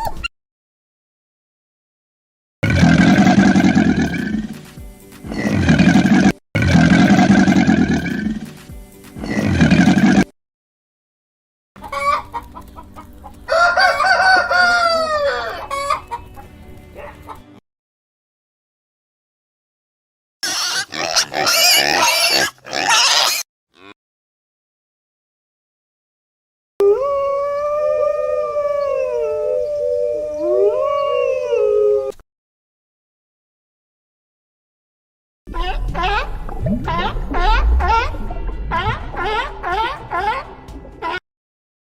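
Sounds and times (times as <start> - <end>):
chicken clucking: 11.8 - 17.5
rooster crowing: 13.5 - 16.0
dogs howling: 26.8 - 32.1.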